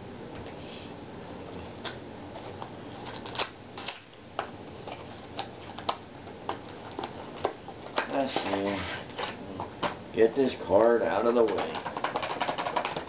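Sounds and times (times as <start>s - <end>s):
cards clicking and snapping: 11.4s - 13.0s.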